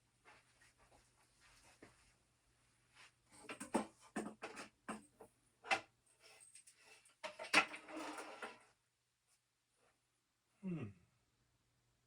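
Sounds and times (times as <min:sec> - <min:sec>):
objects knocking and clattering: 0:03.4 - 0:05.9, 0:06.6 - 0:08.7.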